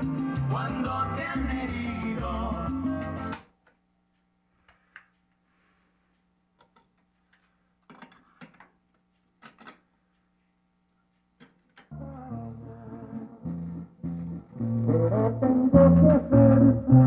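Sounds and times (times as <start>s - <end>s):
latin guitar music on stereo: 0.0s - 3.4s, 11.9s - 17.0s
clicks and knocks: 7.8s - 8.8s, 9.4s - 9.9s
faint steady hum: 9.9s - 17.0s.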